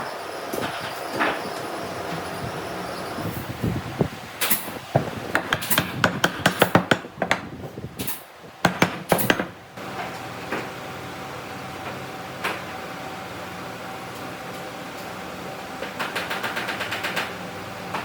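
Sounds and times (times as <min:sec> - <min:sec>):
steady hum with high tone: 0:00.0 - 0:08.9
tools knocking and tapping: 0:05.0 - 0:07.5, 0:08.6 - 0:09.5.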